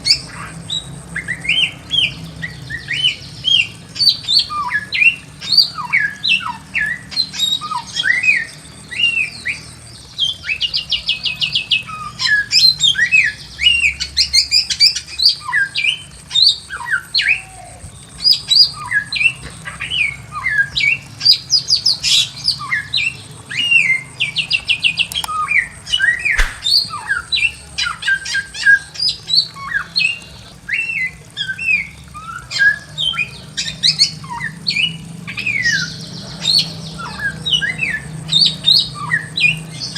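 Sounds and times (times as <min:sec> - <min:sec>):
bird whistling song: 0:26.0 - 0:27.0.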